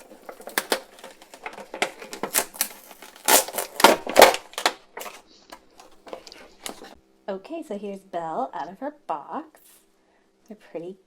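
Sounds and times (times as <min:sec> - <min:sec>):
packaging crackling and clicking: 0:00.0 - 0:07.0.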